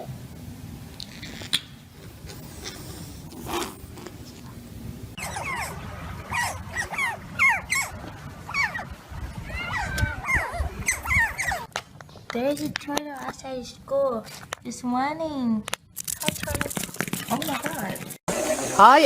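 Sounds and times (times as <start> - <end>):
steady low rumble: 3.0 - 11.7
dog whimpering: 5.2 - 8.9, 9.5 - 11.7.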